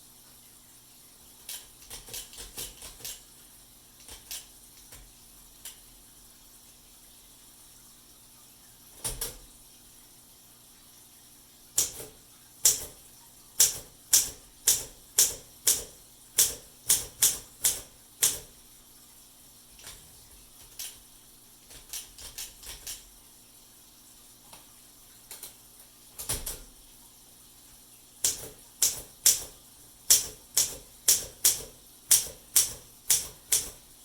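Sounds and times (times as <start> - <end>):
typewriter keystrokes: 1.4 - 3.2, 4.0 - 5.8, 9.0 - 9.4, 11.8 - 13.0, 13.6 - 18.5, 20.6 - 21.0, 21.7 - 23.1, 26.2 - 26.7, 28.2 - 33.8.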